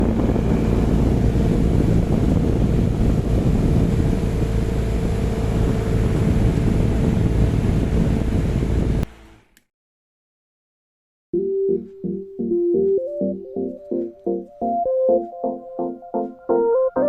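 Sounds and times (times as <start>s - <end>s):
airflow rumbling on microphone: 0.0s - 9.4s
small fan humming: 0.0s - 9.6s.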